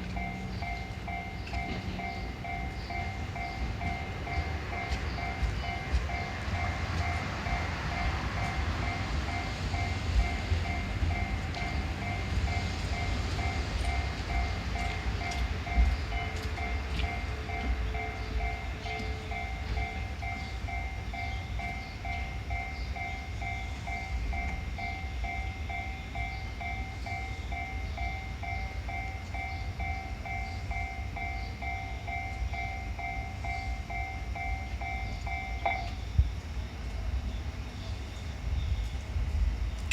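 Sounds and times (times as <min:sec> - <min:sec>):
level crossing alarm bell: 0:00.0 - 0:36.5.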